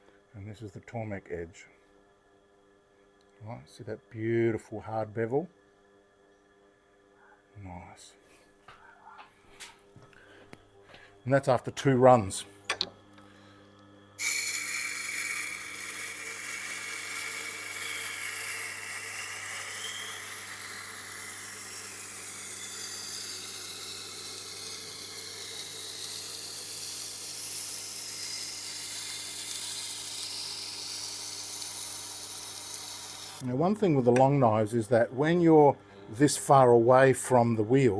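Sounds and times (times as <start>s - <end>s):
knife scraping on grinding stone: 14.2s - 33.4s
motor humming: 14.2s - 33.6s.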